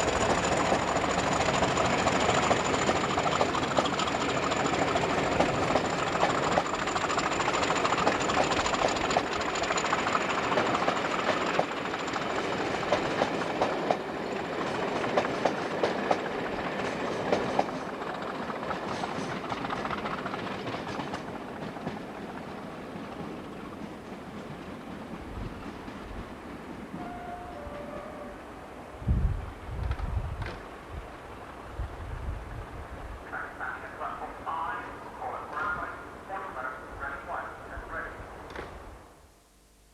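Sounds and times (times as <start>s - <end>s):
wheels clicking over rail joints: 0.0s - 27.9s
diesel train passing: 0.0s - 39.1s.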